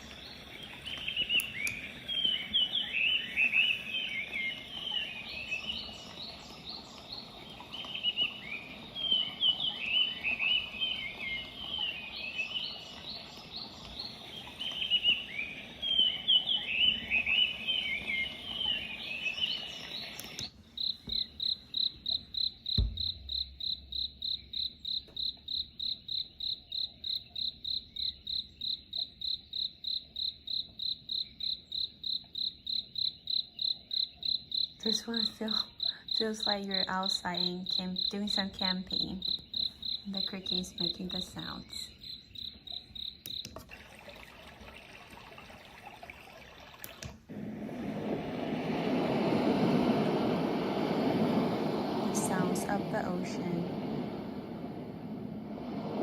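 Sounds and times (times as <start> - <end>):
recorded cricket chirping: 0.0 - 44.3
recorded birdsong chirps: 0.0 - 49.3
low thump: 22.7 - 23.5.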